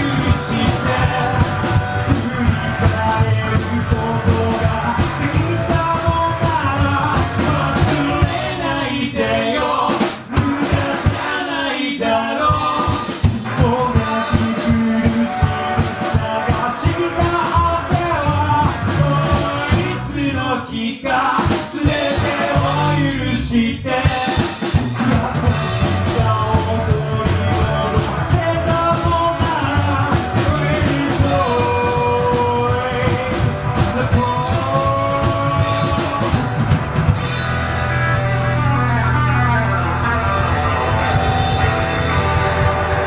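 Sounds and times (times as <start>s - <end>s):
drum and cymbal hits: 0.0s - 20.2s, 21.3s - 43.0s
rockabilly band playing: 0.0s - 43.0s.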